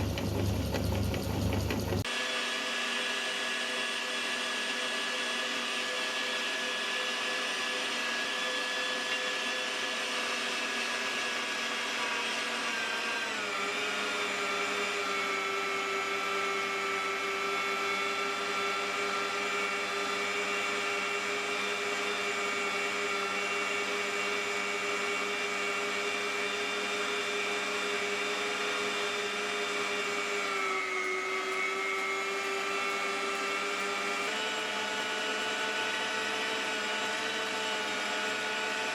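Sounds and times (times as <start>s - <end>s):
electric meat grinder whining: 0.0s - 38.9s.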